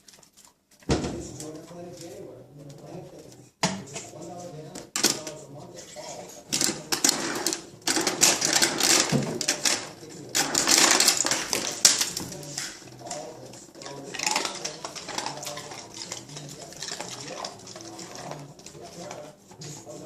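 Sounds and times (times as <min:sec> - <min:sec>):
ice dispenser rattling: 0:06.5 - 0:19.2.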